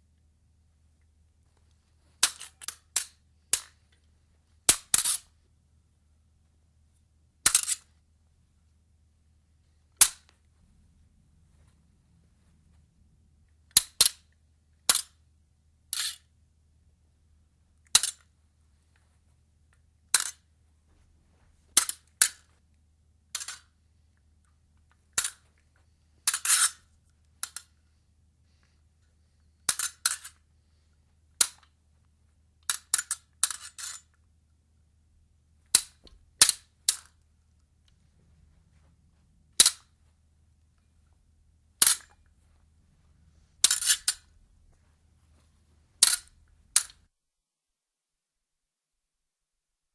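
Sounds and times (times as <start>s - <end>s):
fencing blades clashing: 2.2s - 3.7s, 7.5s - 7.8s, 43.6s - 44.3s, 46.0s - 47.0s.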